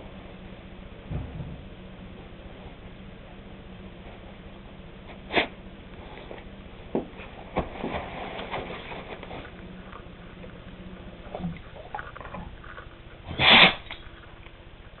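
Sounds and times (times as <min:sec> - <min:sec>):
dog sniffing: 0:05.1 - 0:06.5, 0:11.2 - 0:14.3
dog sneezing: 0:05.3 - 0:05.6, 0:13.3 - 0:13.9.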